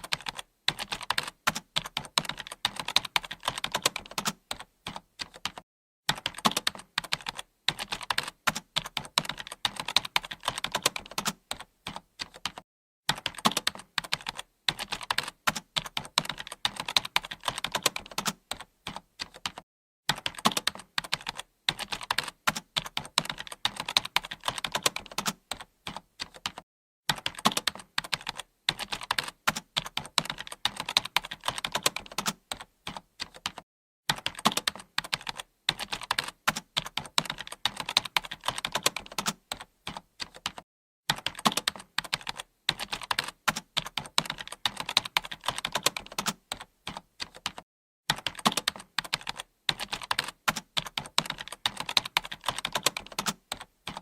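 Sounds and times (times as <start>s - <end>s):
computer keyboard typing: 0.0s - 54.0s.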